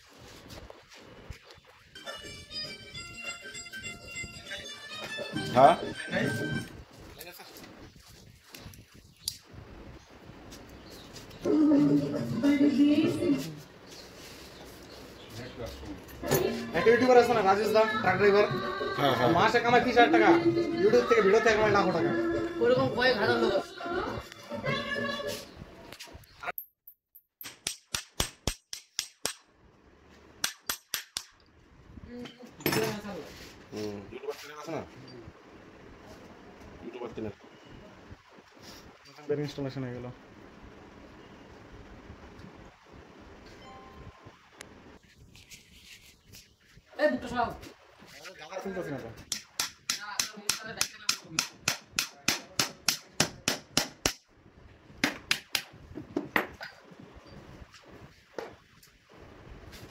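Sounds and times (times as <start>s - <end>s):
hammer strikes on metal: 27.4s - 29.5s, 30.4s - 31.4s, 49.3s - 54.2s.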